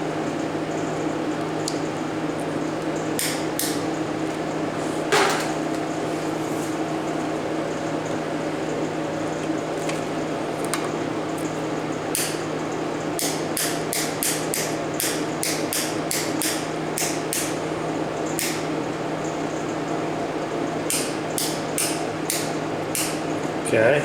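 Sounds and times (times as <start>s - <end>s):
steady electrical hum: 0.0s - 24.0s.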